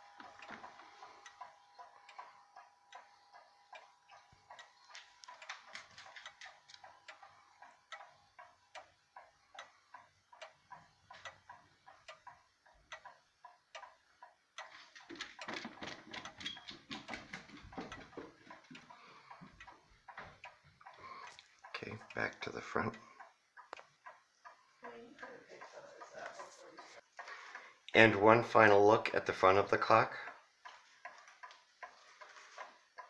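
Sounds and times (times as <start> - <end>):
clock ticking: 0.0 - 33.0.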